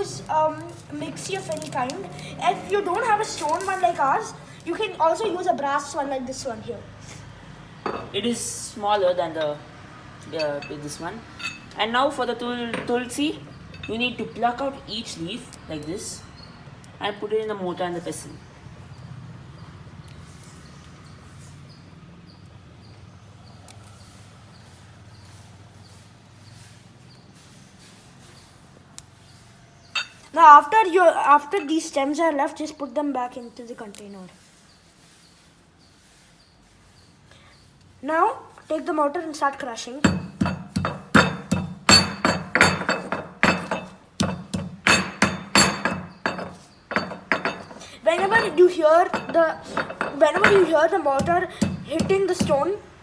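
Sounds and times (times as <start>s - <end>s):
pestle pounding in stone mortar: 40.0s - 52.7s.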